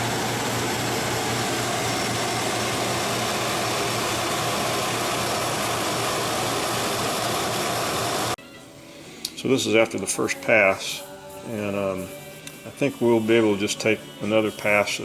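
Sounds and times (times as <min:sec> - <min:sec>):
lathe running: 0:00.0 - 0:08.4.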